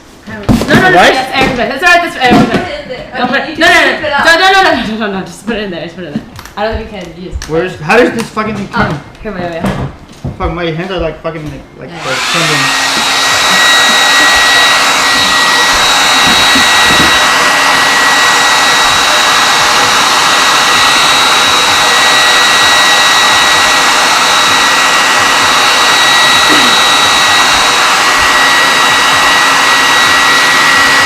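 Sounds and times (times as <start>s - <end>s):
blow dryer running: 0.0s - 5.2s, 11.9s - 31.0s.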